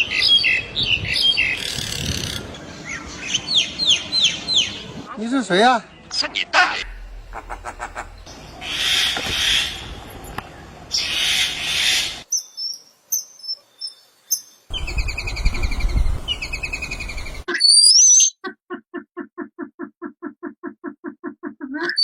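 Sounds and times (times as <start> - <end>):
fast bird trill: 6.8 - 9.9, 14.7 - 18.1
low rumble: 6.8 - 10.9, 14.7 - 17.5
high buzzing bird calls: 6.8 - 17.5.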